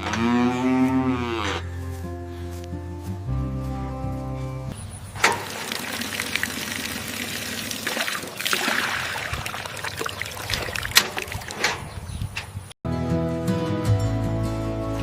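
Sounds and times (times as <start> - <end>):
water pouring and splashing: 5.2 - 11.8.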